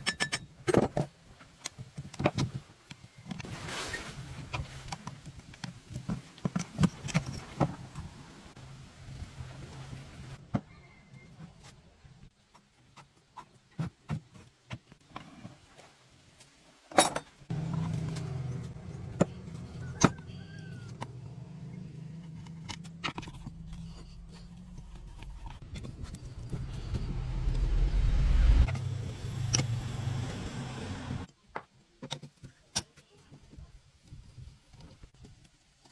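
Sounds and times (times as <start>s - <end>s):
motor running: 22.3s - 31.3s.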